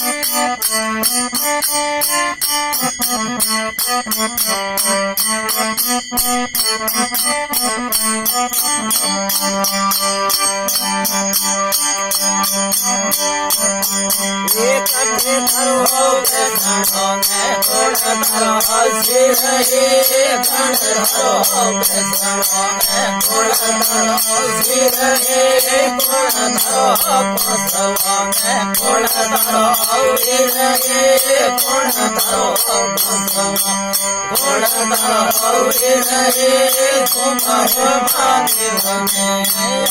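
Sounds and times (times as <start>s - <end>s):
jingling percussion: 0.0s - 39.9s
melodic instrumental line: 6.3s - 12.1s.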